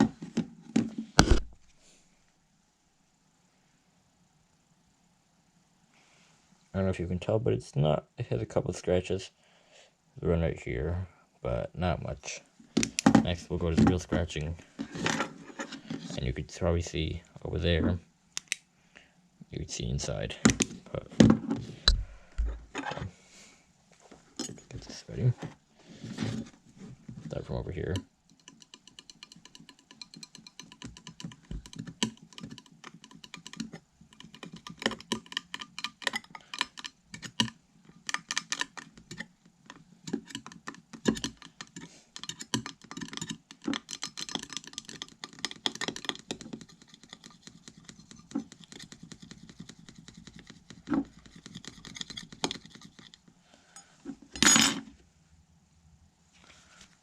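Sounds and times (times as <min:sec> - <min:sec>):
tool scratching phone screen: 0:40.1 - 0:53.2.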